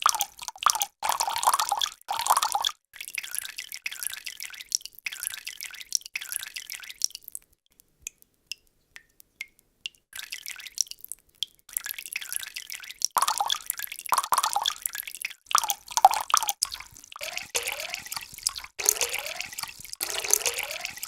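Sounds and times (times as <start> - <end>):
water drops plinking: 13.2 - 14.8, 15.6 - 21.0.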